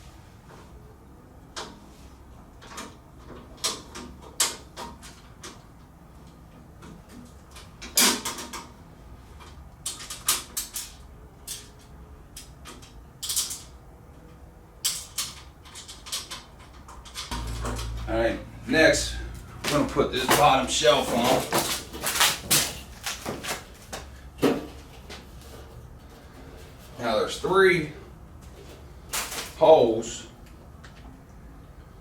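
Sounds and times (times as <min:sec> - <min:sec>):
metal parts clanking: 0:19.6 - 0:24.8, 0:29.1 - 0:29.7.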